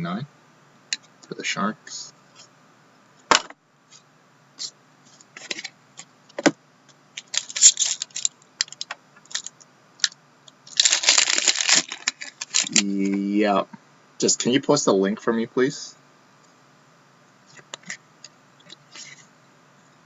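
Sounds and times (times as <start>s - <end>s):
plastic sleeves rustling: 7.2s - 9.5s, 10.7s - 13.2s.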